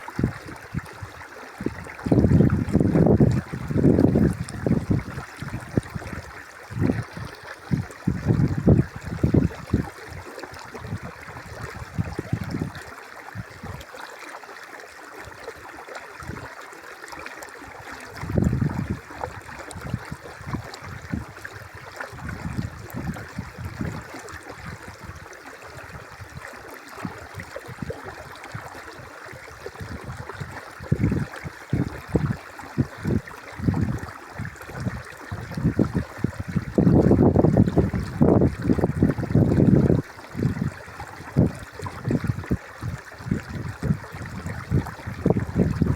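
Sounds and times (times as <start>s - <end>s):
river water babbling: 0.0s - 45.9s
wind buffeting microphone: 0.2s - 10.1s, 10.7s - 13.8s, 18.1s - 19.0s, 19.7s - 25.2s, 27.0s - 28.2s, 29.6s - 45.9s.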